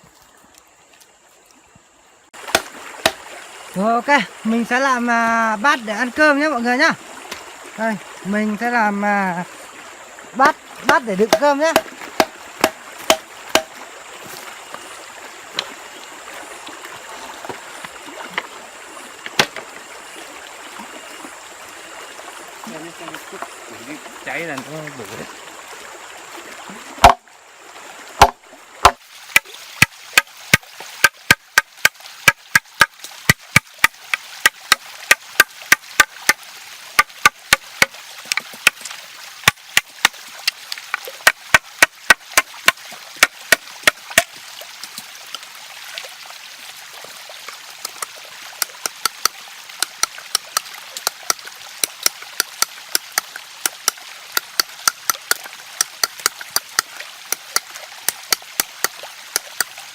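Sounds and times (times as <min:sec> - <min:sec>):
stream running: 0:00.0 - 0:59.9
blade chopping wood: 0:02.4 - 0:03.2, 0:10.8 - 0:13.7, 0:19.2 - 0:19.7, 0:27.0 - 0:27.2, 0:28.2 - 0:36.4, 0:37.0 - 0:44.3, 0:47.8 - 0:59.8.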